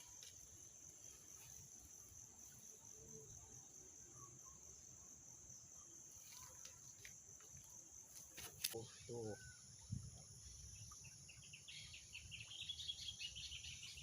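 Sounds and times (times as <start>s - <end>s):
high-pitched insect chorus: 0.0s - 14.0s.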